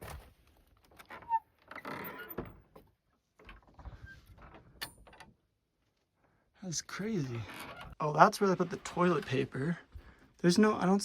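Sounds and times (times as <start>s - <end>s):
wooden door scraping open: 1.0s - 2.8s.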